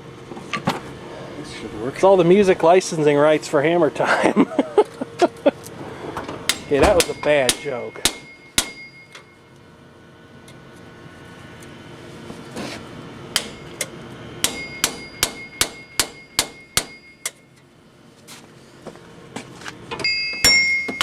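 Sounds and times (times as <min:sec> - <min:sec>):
hammer striking metal: 0:06.5 - 0:09.4, 0:13.4 - 0:17.4, 0:20.0 - 0:21.0.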